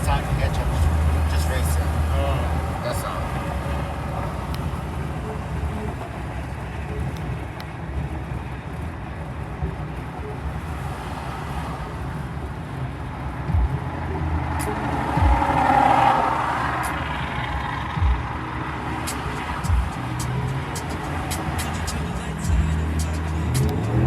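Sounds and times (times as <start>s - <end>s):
pickup truck engine rumble: 0.0s - 24.0s
short low thumps: 13.5s - 14.0s, 14.6s - 15.7s, 18.0s - 18.4s.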